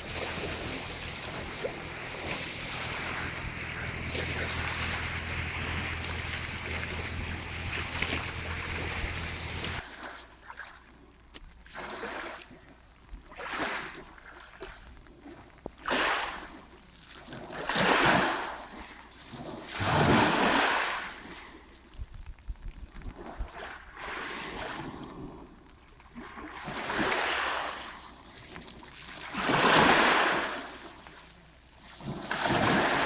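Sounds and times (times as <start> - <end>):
steady rushing noise with hum: 0.0 - 9.8
waves washing onto shore: 0.0 - 10.1, 31.9 - 33.0.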